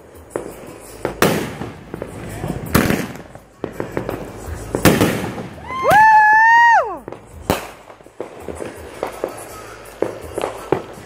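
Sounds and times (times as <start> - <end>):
firework bangs: 0.0 - 11.0
crackling firework pops: 0.2 - 11.0
high firework whistle: 3.8 - 7.7.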